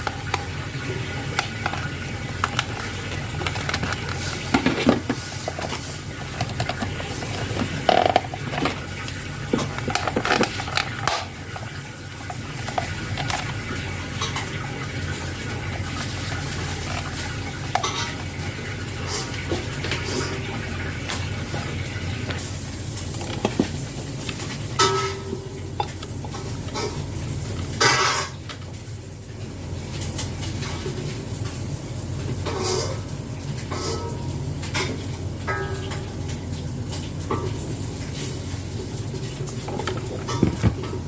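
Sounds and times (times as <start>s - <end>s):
plastic parts and tools clicking: 1.4s - 8.9s, 9.5s - 11.3s.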